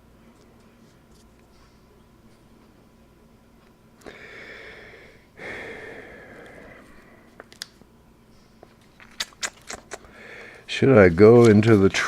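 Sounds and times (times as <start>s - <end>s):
person sighing: 4.0s - 7.2s.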